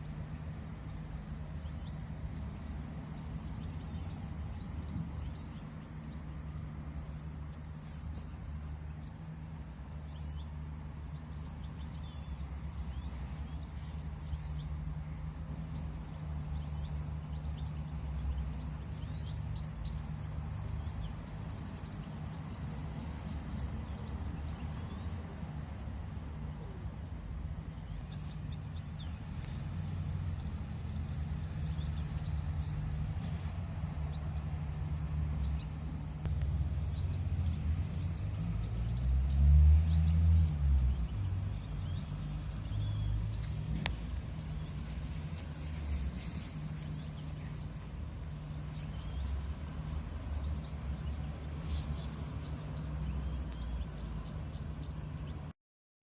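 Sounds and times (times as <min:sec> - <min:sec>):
small birds chirping: 0:00.0 - 0:55.5
steady low rumble: 0:40.4 - 0:55.5.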